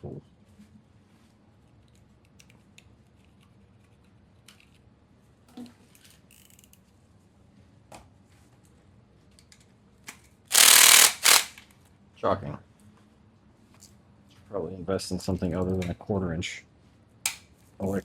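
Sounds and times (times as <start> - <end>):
electric impact driver hammering: 10.5 - 11.6.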